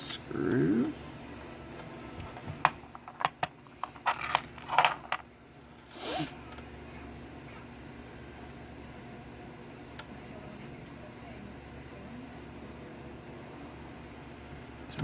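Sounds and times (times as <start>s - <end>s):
metal padlock parts clinking: 3.8s - 5.2s.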